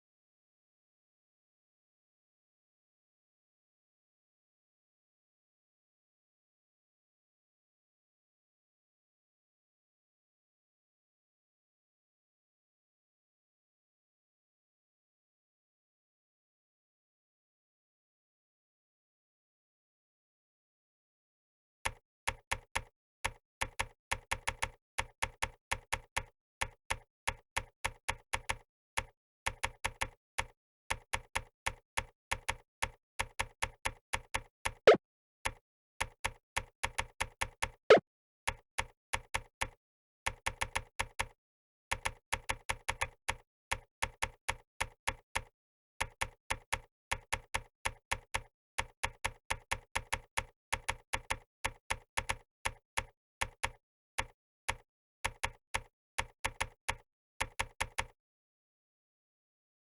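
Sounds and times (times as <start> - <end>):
keystroke clicks: 21.9 - 37.8.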